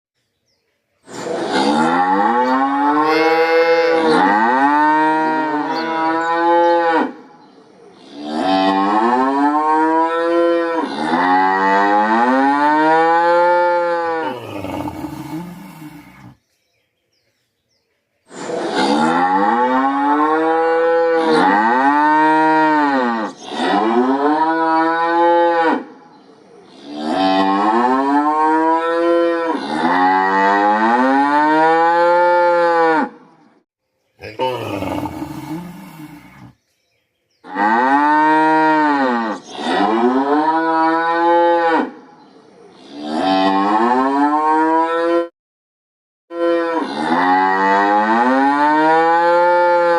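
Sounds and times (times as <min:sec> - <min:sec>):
calf mooing: 0:01.7 - 0:07.2.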